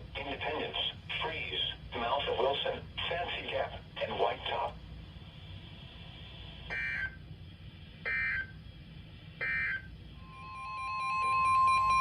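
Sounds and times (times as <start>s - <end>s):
steady single tone: 9.4s - 12.0s.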